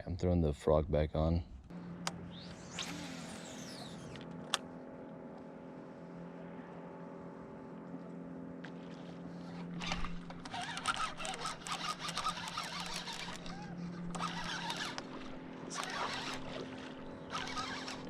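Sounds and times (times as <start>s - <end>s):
small boat motor humming: 1.6s - 18.0s.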